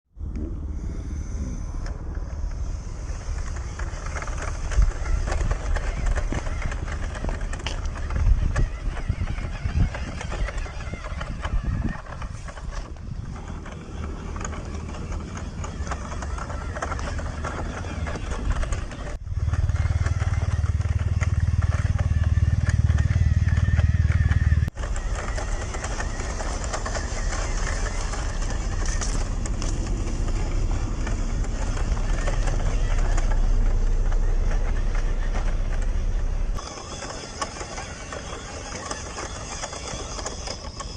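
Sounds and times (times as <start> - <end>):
heavy low rumble: 0.1 - 36.7
toy truck electric motor running: 0.6 - 40.9
tyres crackling over gravel: 1.6 - 40.9.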